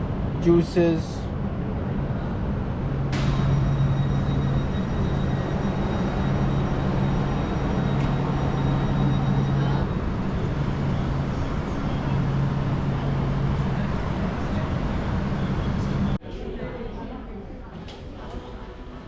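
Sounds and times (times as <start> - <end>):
train rumbling: 0.0 - 16.2
faint high whine: 2.1 - 16.2.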